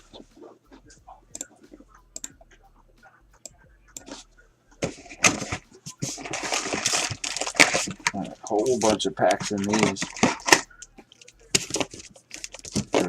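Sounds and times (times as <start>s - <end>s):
plastic wrapping crinkling: 4.8s - 13.0s.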